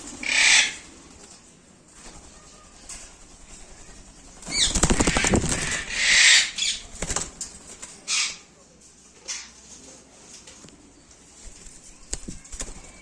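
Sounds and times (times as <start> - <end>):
birds flapping wings: 0.0 - 8.0, 11.4 - 13.0.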